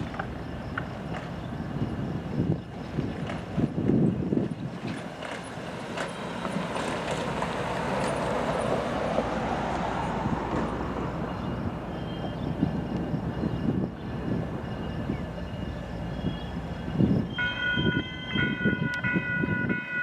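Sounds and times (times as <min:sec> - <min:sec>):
freight train rolling past: 0:00.0 - 0:20.0.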